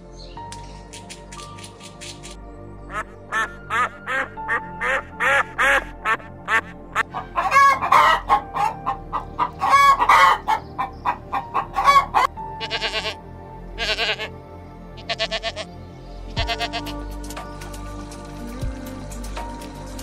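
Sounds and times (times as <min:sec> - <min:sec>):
background music: 0:00.0 - 0:20.0
chickens clucking: 0:03.3 - 0:12.3.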